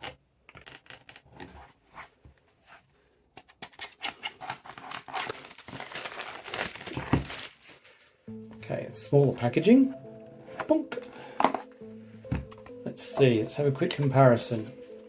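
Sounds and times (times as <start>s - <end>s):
packaging crinkling and tearing: 3.7s - 8.2s.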